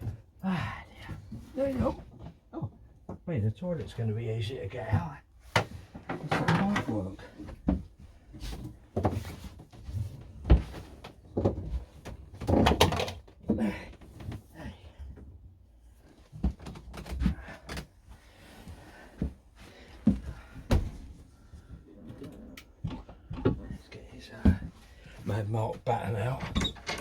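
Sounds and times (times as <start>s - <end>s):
knocks clunks and scrapes of hand work: 4.9s - 15.3s, 18.6s - 25.3s, 26.2s - 27.0s.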